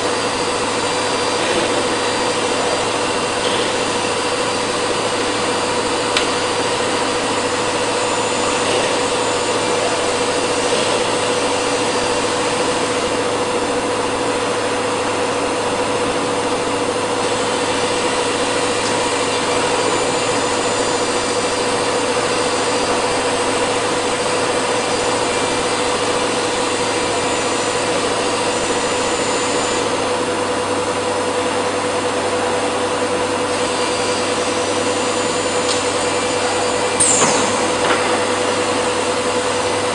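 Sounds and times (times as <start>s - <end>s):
router spindle whine: 0.0s - 39.9s
router bit cutting wood: 15.9s - 30.1s.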